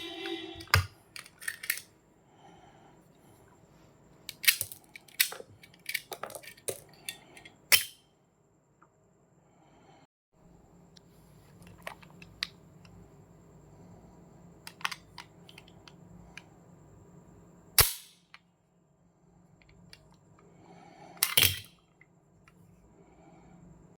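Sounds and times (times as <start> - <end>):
metallic handling clicks: 0.2 - 1.9, 4.3 - 8.0, 14.7 - 16.5, 21.2 - 21.8.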